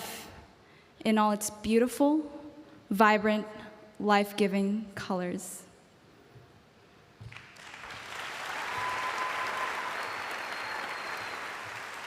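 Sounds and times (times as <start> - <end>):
audience applause: 7.3 - 12.0.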